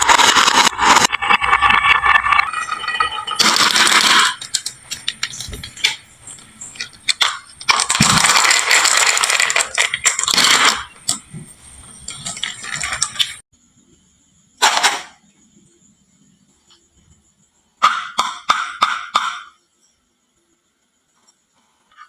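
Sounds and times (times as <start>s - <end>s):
marbles rattling down wooden run: 0.0s - 13.4s.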